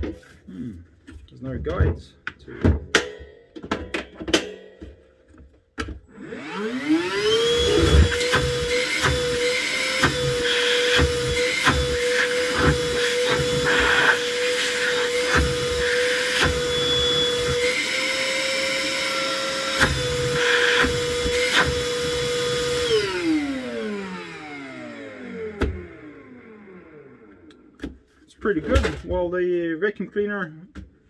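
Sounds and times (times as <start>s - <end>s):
knocks and thumps: 1.0s - 6.0s
vacuum motor whining: 6.1s - 27.8s.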